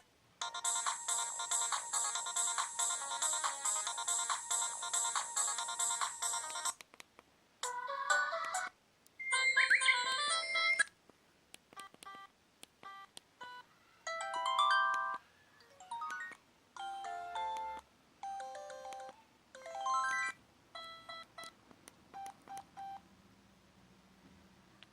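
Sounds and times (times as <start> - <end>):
phone ringtone melodies: 0.4 - 6.8, 7.6 - 10.9, 13.4 - 21.4.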